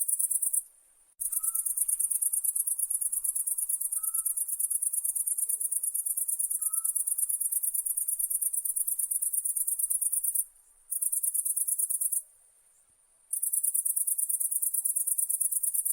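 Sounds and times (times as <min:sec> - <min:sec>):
insect trilling: 0:01.2 - 0:12.2.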